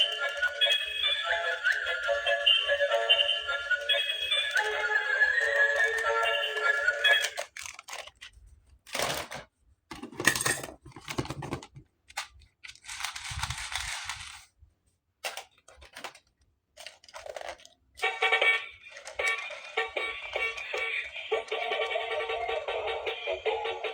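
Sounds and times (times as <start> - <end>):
plastic toy parts clicking: 5.5 - 9.4, 10.6 - 14.5, 15.2 - 18.2, 18.8 - 21.2
toy packaging tearing: 7.1 - 9.3, 12.2 - 14.5, 15.3 - 21.1.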